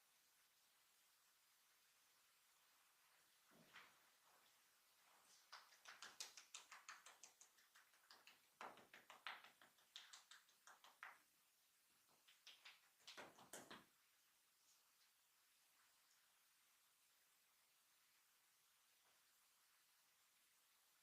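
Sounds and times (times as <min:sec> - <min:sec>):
rapid hand taps: 0:05.4 - 0:11.3, 0:12.1 - 0:13.9.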